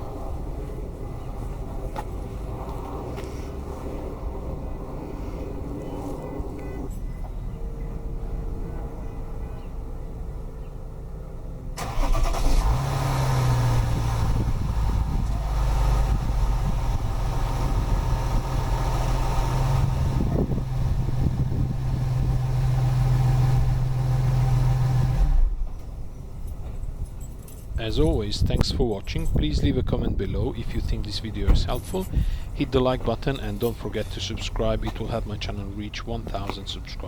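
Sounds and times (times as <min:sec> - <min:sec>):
car engine starting and running: 0:11.1 - 0:25.8, 0:30.6 - 0:37.0.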